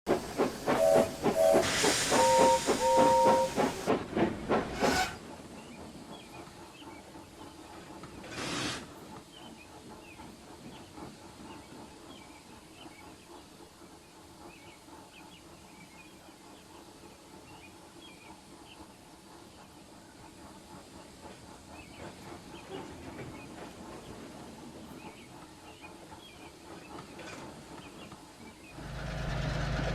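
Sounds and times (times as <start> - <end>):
steam hiss: 0.1 - 29.9
steam locomotive chuffing: 0.1 - 29.9
two-note train whistle toots: 0.7 - 3.7.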